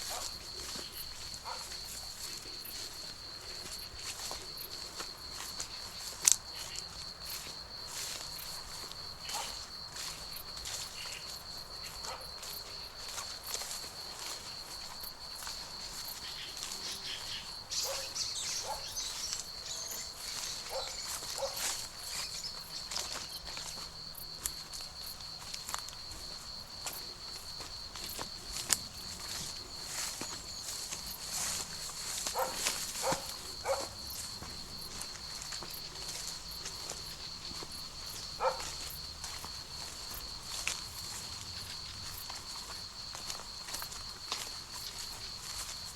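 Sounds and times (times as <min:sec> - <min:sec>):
footsteps crunching dry grass: 0:00.0 - 0:45.9
high-pitched insect trill: 0:00.0 - 0:45.9
distant dog barking: 0:01.4 - 0:01.8, 0:09.3 - 0:09.6, 0:12.0 - 0:12.3, 0:17.8 - 0:19.1, 0:20.6 - 0:21.7, 0:32.3 - 0:34.0, 0:38.4 - 0:38.8.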